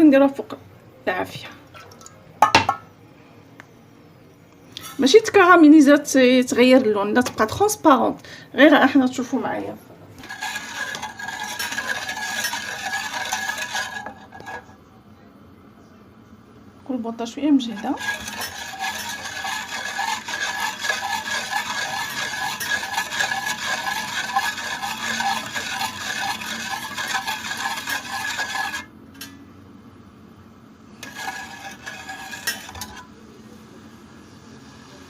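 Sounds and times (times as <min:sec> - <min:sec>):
spoon scraping a saucepan: 0:10.2 - 0:14.7, 0:17.6 - 0:28.9, 0:31.0 - 0:33.1.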